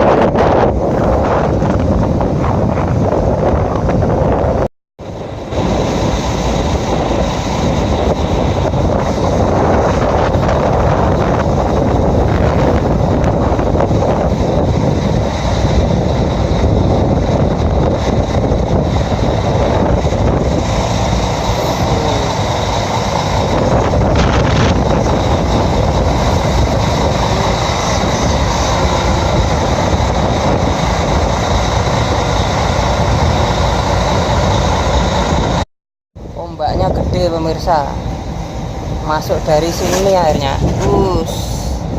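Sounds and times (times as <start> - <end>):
ferry engine rumbling: 0.0 - 35.6, 36.2 - 41.9
rough sea noise: 0.0 - 35.6, 36.2 - 41.9.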